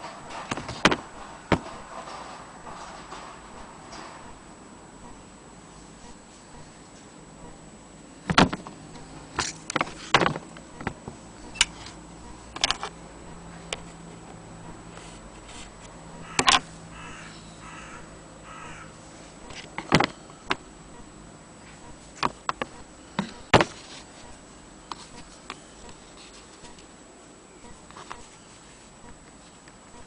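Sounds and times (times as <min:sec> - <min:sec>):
sharp clicks and knocks: 0:00.0 - 0:04.4, 0:08.3 - 0:13.0, 0:16.2 - 0:16.7, 0:21.8 - 0:23.8
short harsh calls: 0:16.2 - 0:19.0.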